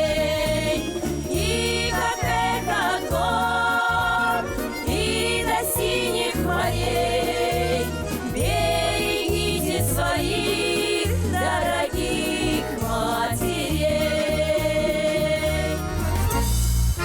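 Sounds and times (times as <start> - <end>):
folk chorus singing: 0.0 - 16.5
instrumental accompaniment with bass: 0.0 - 17.0.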